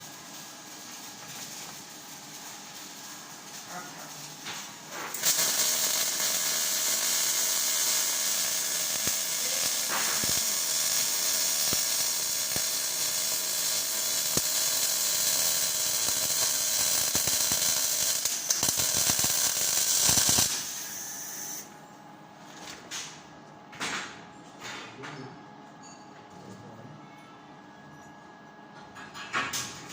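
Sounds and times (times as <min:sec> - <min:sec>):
welding arc sizzling hiss: 0:00.0 - 0:21.8.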